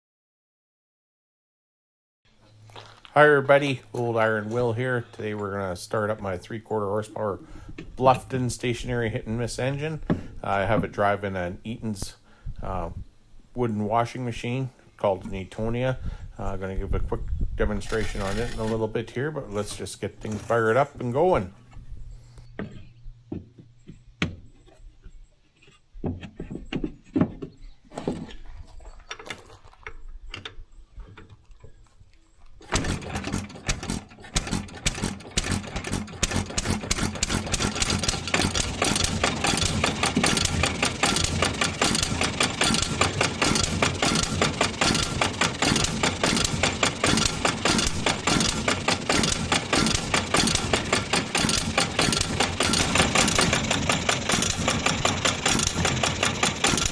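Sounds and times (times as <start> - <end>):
clicks and knocks of cranking: 17.9 - 18.8, 32.6 - 56.9
stationary engine running: 17.9 - 18.8, 32.6 - 56.9.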